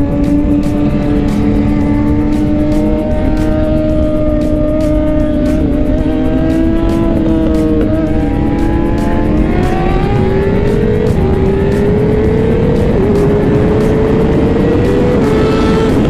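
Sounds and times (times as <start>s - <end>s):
motorcycle engine at speed: 0.0s - 16.0s
wind rush on microphone: 0.0s - 16.0s.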